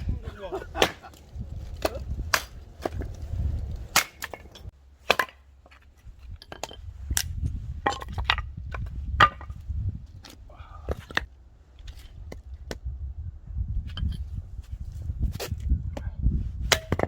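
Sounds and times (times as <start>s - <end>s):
low rumble: 1.2s - 4.7s.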